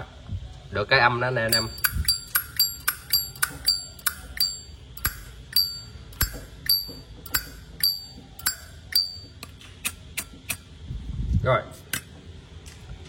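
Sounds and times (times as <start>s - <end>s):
bright metallic chime: 1.5s - 9.3s.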